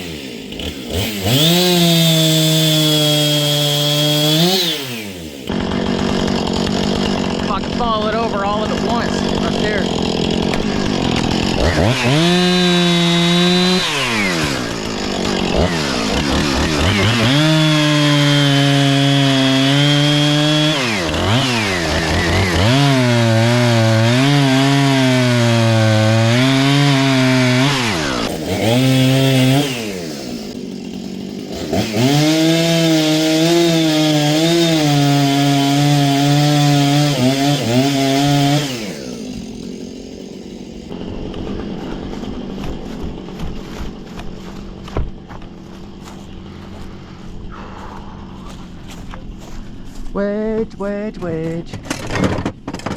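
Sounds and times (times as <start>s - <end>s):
chainsaw cutting wood: 0.0s - 52.9s.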